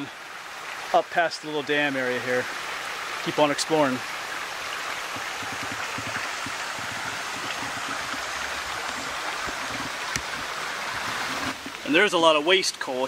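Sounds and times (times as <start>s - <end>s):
stream water rushing: 0.0s - 13.0s
low knocks of stones: 5.0s - 11.8s.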